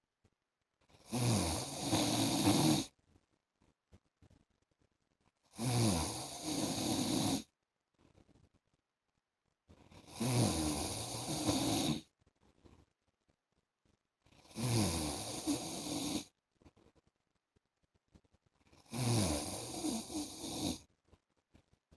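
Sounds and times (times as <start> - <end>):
man snoring: 1.0 - 2.9, 5.5 - 7.5, 10.0 - 12.0, 14.4 - 16.3, 18.8 - 20.8.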